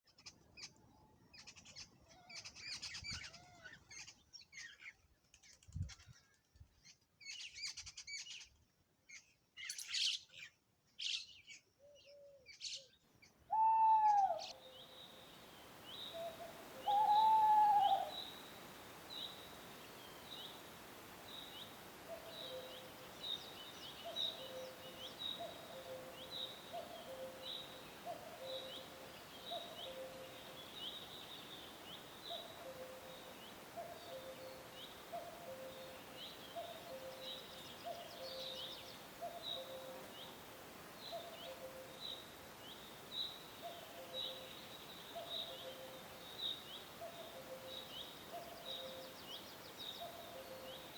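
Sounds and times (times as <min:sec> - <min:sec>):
birds chirping and twittering: 0:00.0 - 0:50.9
steady hiss: 0:13.2 - 0:50.9
loud arched bird calls: 0:13.5 - 0:40.0.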